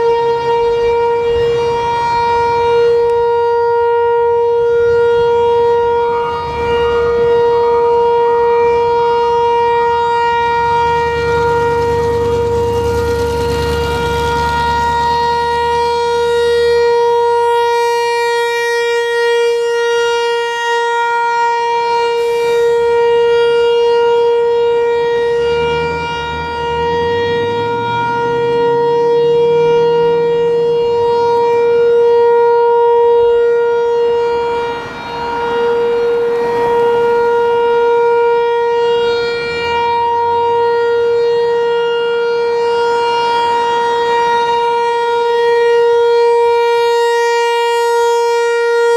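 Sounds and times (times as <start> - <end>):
warning siren steady tone: 0.0 - 48.9.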